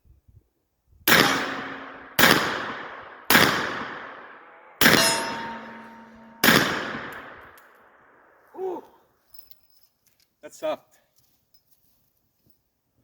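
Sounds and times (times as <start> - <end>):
revolver gunshots echoing: 1.1 - 8.2.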